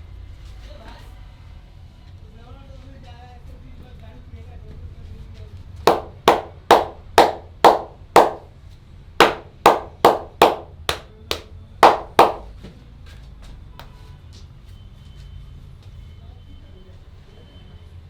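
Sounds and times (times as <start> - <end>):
hands slapping in massage: 5.9 - 8.4, 9.2 - 12.5.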